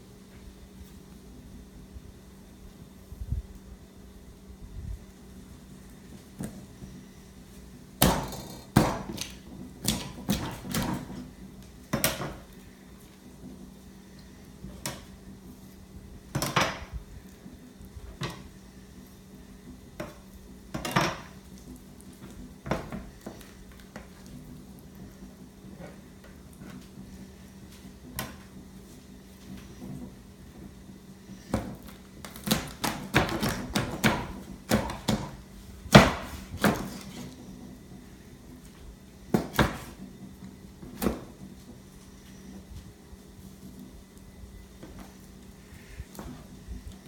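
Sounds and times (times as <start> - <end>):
knife chopping on cutting board: 31.5 - 37.0, 39.3 - 39.9.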